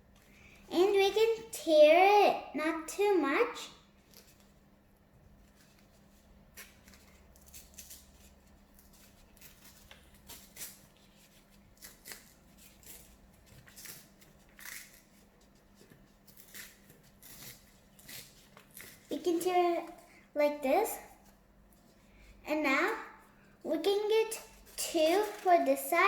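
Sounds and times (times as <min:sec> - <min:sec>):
paper crinkling and tearing: 0:05.4 - 0:20.0, 0:24.4 - 0:26.0.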